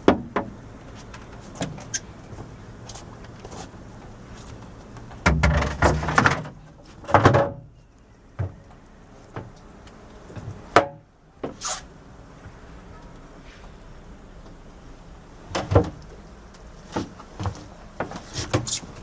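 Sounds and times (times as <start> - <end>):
knocks and thuds: 5.2 - 7.7.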